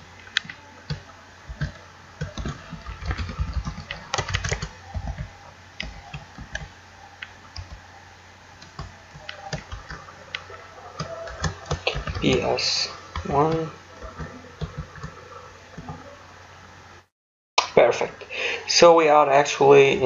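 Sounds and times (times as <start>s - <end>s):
computer keyboard typing: 0.3s - 7.8s, 8.6s - 15.2s.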